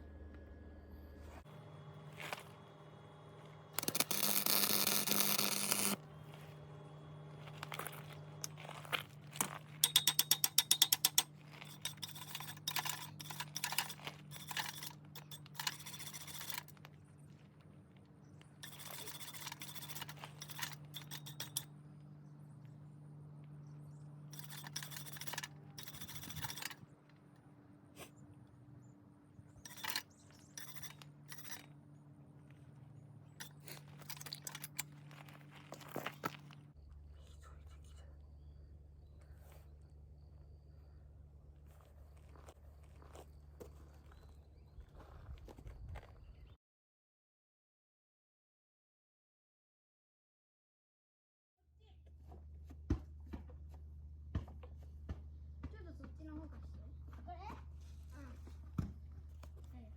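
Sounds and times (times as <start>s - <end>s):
steady low hum: 0.0s - 44.5s
loud rough metalworking bursts: 1.4s - 6.2s, 9.8s - 16.7s, 18.6s - 21.7s, 24.3s - 26.8s, 29.7s - 30.0s, 30.6s - 31.7s
quick clicks: 3.8s - 6.0s, 18.6s - 21.7s.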